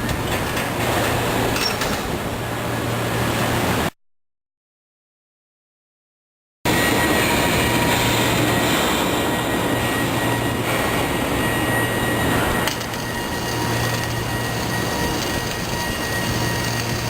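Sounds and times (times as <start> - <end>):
low electrical hum: 12.2 - 17.0
arc welding hiss: 12.6 - 17.0.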